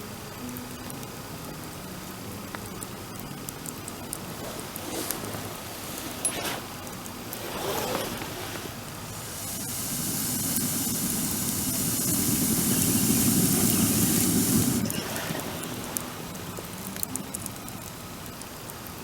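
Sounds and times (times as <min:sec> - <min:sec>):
bonfire hissing: 0:00.0 - 0:19.0
fire crackling and popping: 0:00.0 - 0:19.0.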